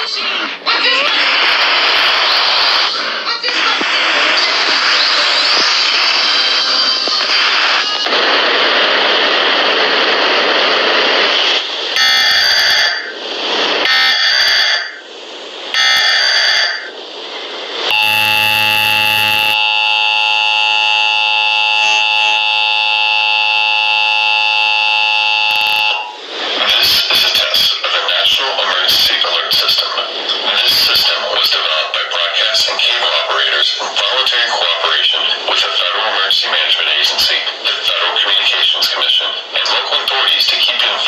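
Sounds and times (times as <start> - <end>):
two-tone attention signal: 12.0 - 13.1, 13.9 - 15.0, 15.8 - 16.9, 17.9 - 26.2
screeching data bursts: 13.9 - 15.0, 15.8 - 16.9, 17.9 - 26.2
hissing noise: 26.0 - 35.5.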